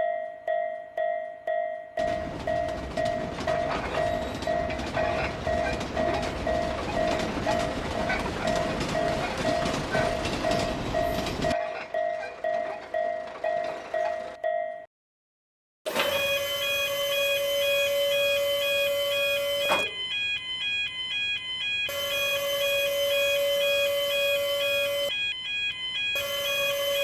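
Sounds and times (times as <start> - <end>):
level crossing bell dinging: 0.0 - 14.9
train passing: 2.0 - 14.3.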